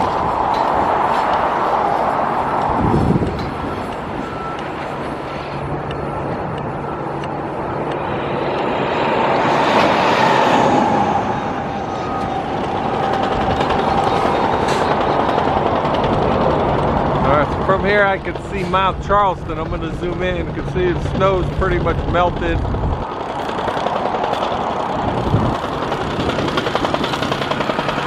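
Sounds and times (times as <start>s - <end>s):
vehicle passing by: 0.0s - 15.1s
road traffic passing: 0.0s - 28.0s.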